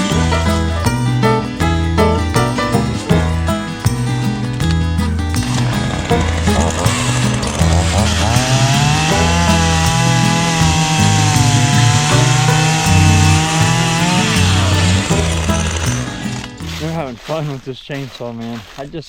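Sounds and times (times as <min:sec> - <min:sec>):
chainsaw cutting wood: 0:00.0 - 0:16.8
background music with bass line: 0:00.0 - 0:17.0.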